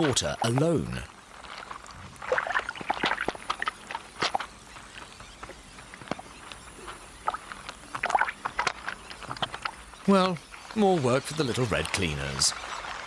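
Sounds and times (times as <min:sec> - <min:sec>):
faint steady hiss: 0:00.0 - 0:13.0
watery clicks and plops: 0:01.6 - 0:04.5, 0:07.2 - 0:09.8.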